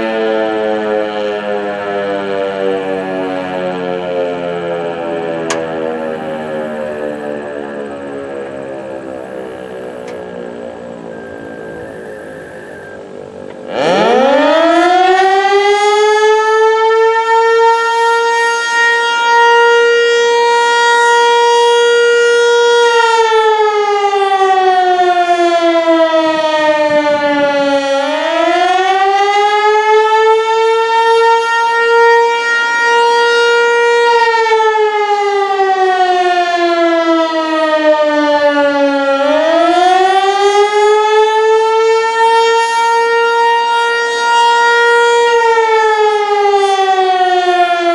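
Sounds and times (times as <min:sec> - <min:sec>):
warning siren wailing: 0:00.0 - 0:47.9.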